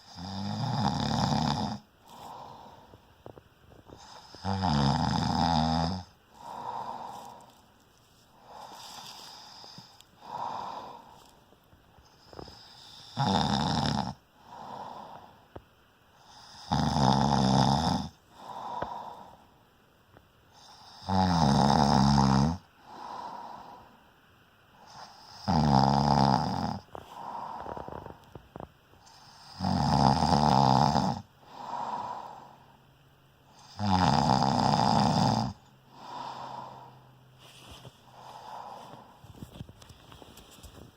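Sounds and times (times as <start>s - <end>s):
person snoring: 0.0s - 3.0s, 3.8s - 7.6s, 8.4s - 11.3s, 12.0s - 15.5s, 16.2s - 19.4s, 20.6s - 23.9s, 24.8s - 32.6s, 33.5s - 39.2s
soft breath: 2.0s - 4.4s, 6.3s - 13.2s, 14.3s - 16.5s, 18.2s - 19.6s, 22.8s - 24.1s, 26.8s - 29.5s, 31.4s - 32.9s, 35.8s - 40.9s.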